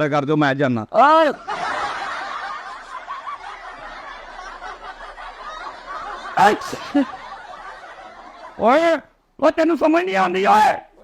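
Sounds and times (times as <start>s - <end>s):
muffled snickering and laughter: 1.4s - 8.6s.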